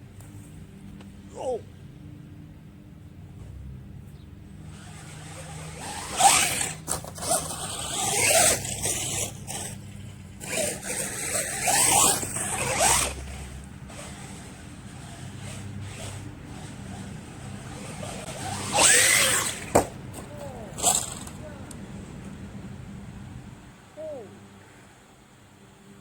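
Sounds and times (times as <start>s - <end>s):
rc truck motor whining: 4.5s - 22.4s.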